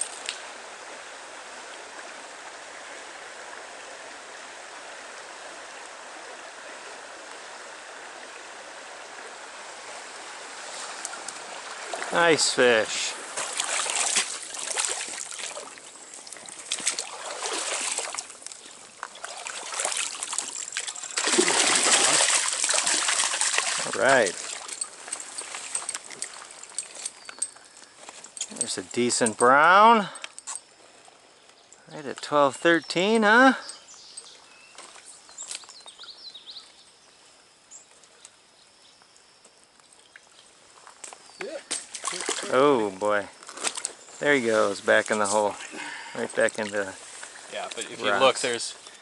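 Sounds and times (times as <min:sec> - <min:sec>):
stream trickling and splashing: 0:00.0 - 0:49.0
short splashes and clicks: 0:10.8 - 0:12.2, 0:12.9 - 0:27.5, 0:40.1 - 0:42.6, 0:43.5 - 0:44.0
small bird chirping: 0:25.7 - 0:28.8, 0:33.6 - 0:39.1.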